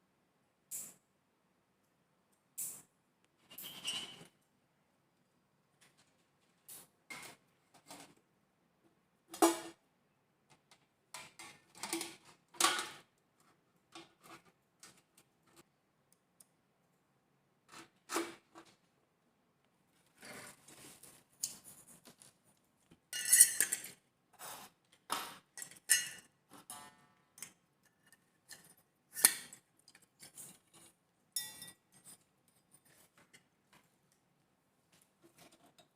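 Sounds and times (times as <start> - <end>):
objects clicking and clattering: 10.5 - 13.2, 20.3 - 24.0.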